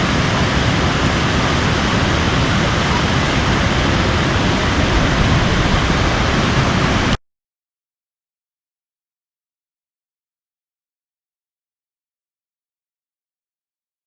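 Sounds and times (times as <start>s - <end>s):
waterfall roaring: 0.0s - 7.2s.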